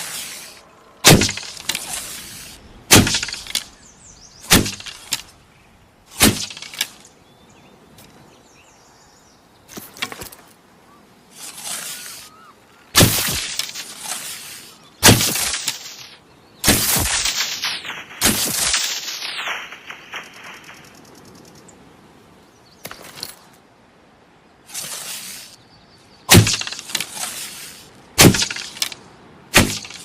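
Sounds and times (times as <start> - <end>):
sharp crack: 0.0 - 5.4, 6.1 - 7.2, 12.9 - 21.6, 26.3 - 30.0
arrow hits: 1.0 - 3.8, 4.5 - 5.3, 6.2 - 7.0, 13.0 - 14.3, 15.0 - 20.9, 26.3 - 27.4, 28.2 - 30.0.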